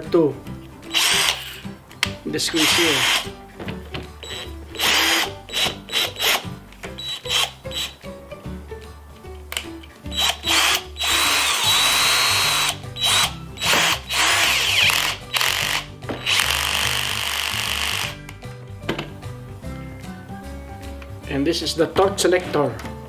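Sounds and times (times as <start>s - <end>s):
cordless drill motor whining: 0.8s - 1.8s, 2.4s - 8.1s, 9.6s - 18.2s.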